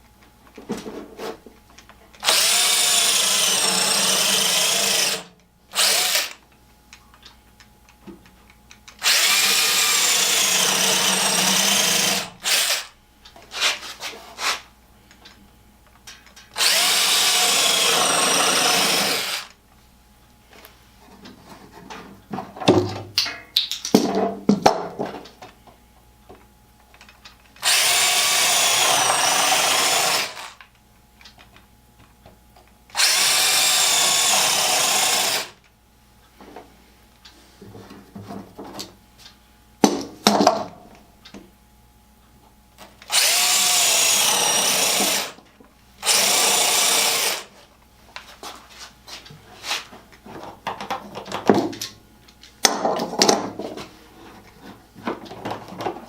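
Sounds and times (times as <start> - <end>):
power drill boring wood: 2.2 - 6.4, 9.0 - 12.9, 16.6 - 19.5, 27.6 - 30.6, 33.0 - 35.6, 43.1 - 45.4, 46.0 - 47.5.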